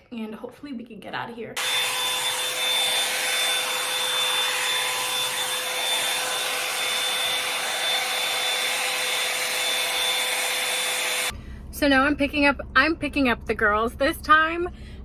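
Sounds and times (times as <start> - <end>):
hot-air brush dryer running: 1.6 - 11.3.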